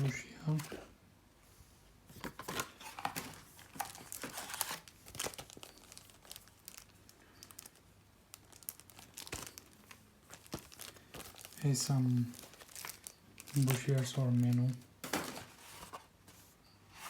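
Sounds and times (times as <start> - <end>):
paper and cardboard crinkling: 0.0 - 0.9, 2.1 - 17.0.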